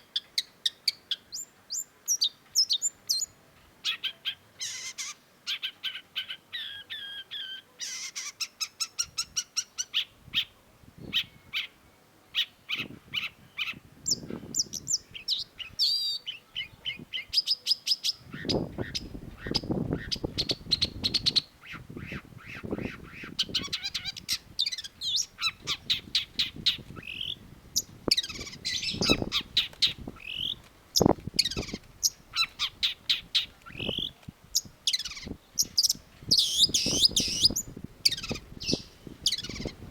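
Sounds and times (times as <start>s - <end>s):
shrike chattering song: 18.4s - 39.8s.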